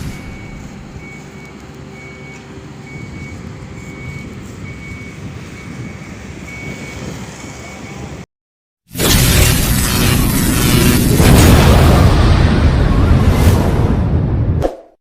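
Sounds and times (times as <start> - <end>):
low engine rumble: 0.0 - 8.2
reversing alarm beeping: 0.0 - 8.2.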